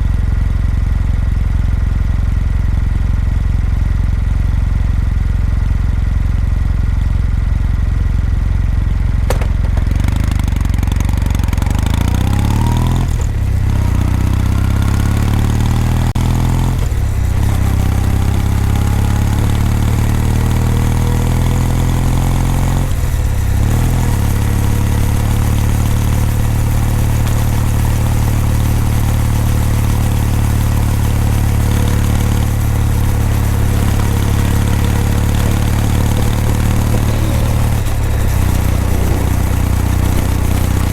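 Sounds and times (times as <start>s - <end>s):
motorcycle engine running: 0.0s - 40.9s
gear change pitch drop: 29.0s - 40.9s.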